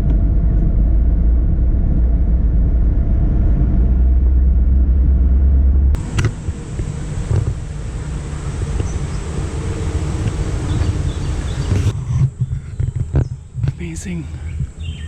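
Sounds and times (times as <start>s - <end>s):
car road and engine rumble: 0.0s - 15.0s
outdoor ambience: 0.0s - 15.0s
steady high-pitched whine: 6.0s - 12.6s.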